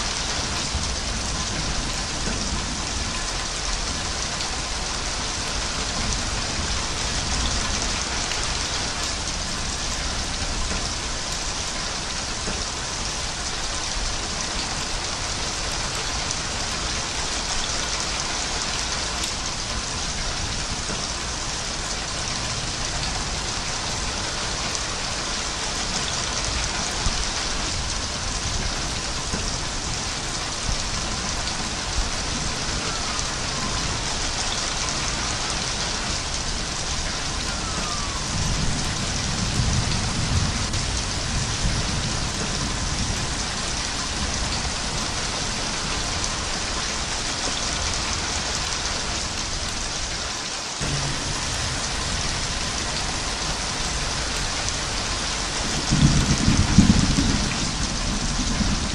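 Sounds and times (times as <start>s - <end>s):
heavy rain: 0.0s - 58.9s
distant thunder rumble: 26.0s - 45.2s, 50.8s - 58.9s.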